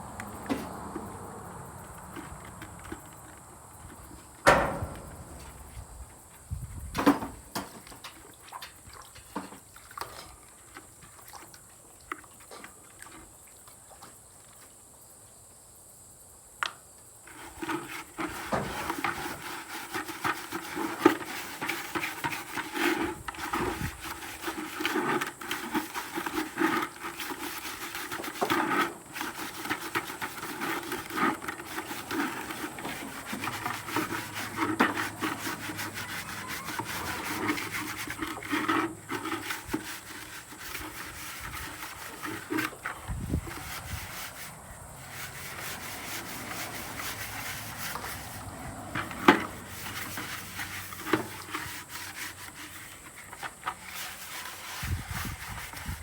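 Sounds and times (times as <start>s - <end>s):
bucket scrubbing: 0.0s - 6.0s, 17.3s - 56.0s
plastic buckets knocking: 4.4s - 5.9s, 18.3s - 42.8s.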